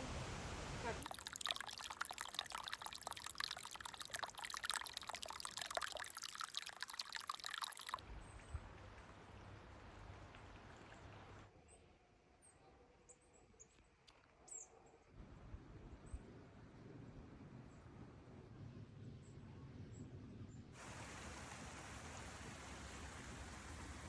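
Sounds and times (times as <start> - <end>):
water trickling and bubbling: 1.0 - 11.5.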